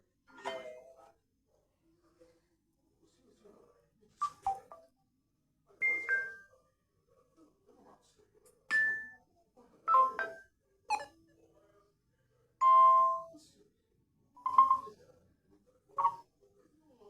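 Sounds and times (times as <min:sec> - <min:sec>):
electronic notification chimes: 0:05.8 - 0:06.4, 0:08.7 - 0:09.2, 0:09.9 - 0:11.1, 0:12.6 - 0:13.3, 0:14.4 - 0:14.9, 0:16.0 - 0:16.2.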